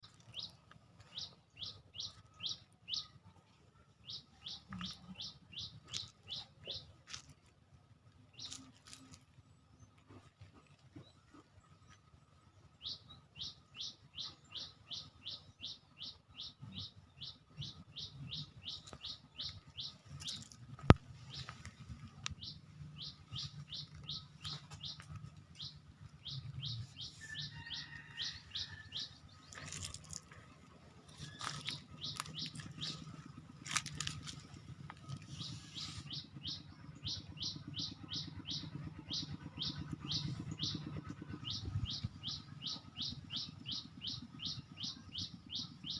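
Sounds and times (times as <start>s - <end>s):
rustling: 29.3s - 36.1s.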